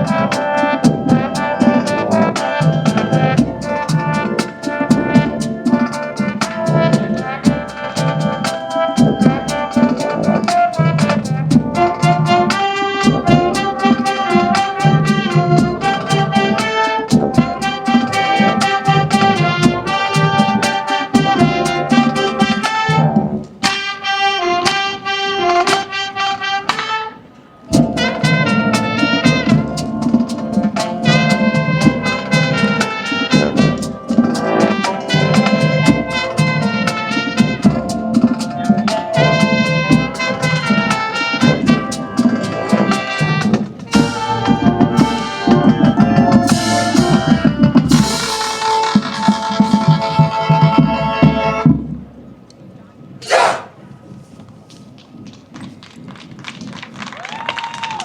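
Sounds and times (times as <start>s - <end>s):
drumline beating: 0.0s - 27.0s, 27.7s - 52.4s, 55.1s - 58.0s
marching band playing: 0.0s - 52.4s
cymbals crashing: 46.5s - 50.9s.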